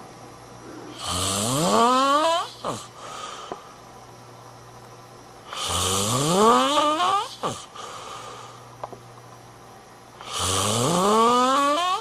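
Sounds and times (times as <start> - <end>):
breathy whistling snore: 0.7 - 3.3, 5.5 - 8.6, 10.2 - 12.0.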